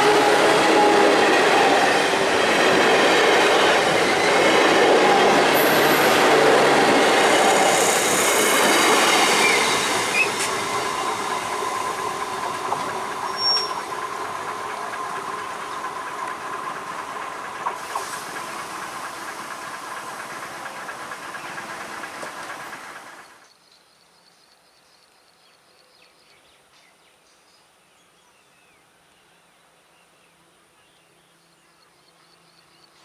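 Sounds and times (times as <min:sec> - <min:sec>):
electric train passing: 0:00.0 - 0:23.4.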